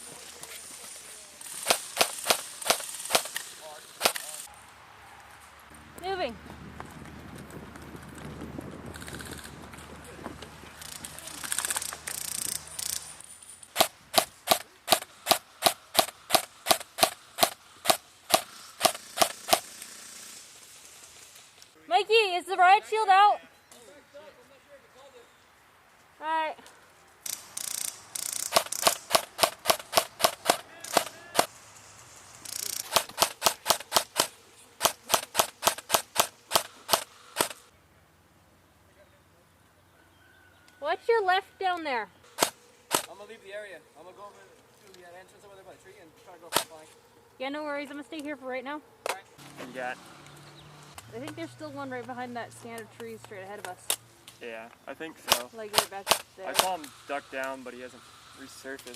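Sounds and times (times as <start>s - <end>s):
airsoft rifle shots: 1.4s - 4.5s, 13.7s - 20.1s, 27.3s - 31.5s, 32.4s - 37.6s, 42.3s - 43.1s, 55.3s - 56.9s.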